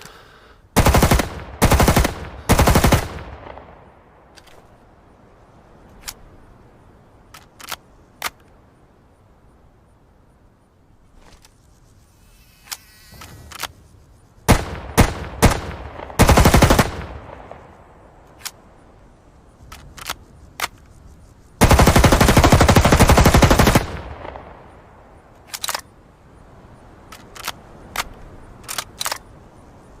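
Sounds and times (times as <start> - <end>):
rifle single shots: 0.8 - 4.7, 14.5 - 18.7, 21.6 - 25.8
quiet clicks and cracks: 5.8 - 6.4, 7.2 - 8.7, 16.8 - 19.0, 19.6 - 21.2, 23.9 - 26.0, 27.0 - 29.5
automatic rifle bursts: 14.5 - 17.6.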